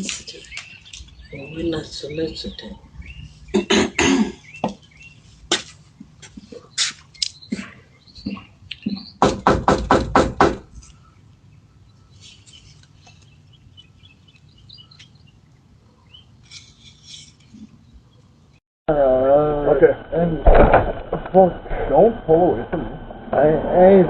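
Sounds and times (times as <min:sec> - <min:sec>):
birds chirping faintly: 0:00.0 - 0:18.6
knocking on a door: 0:08.3 - 0:10.7.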